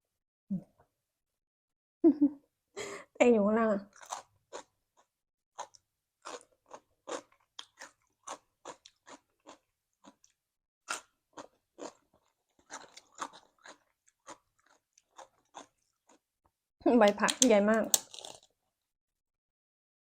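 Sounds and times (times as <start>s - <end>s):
person chewing crunchy vegetables: 3.9s - 16.2s, 17.9s - 18.5s.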